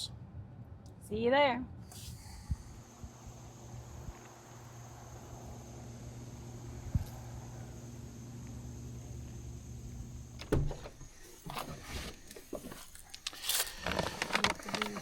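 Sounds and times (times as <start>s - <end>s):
low hum with high whine: 0.0s - 15.0s
knocks clatter and rustling: 10.6s - 15.0s.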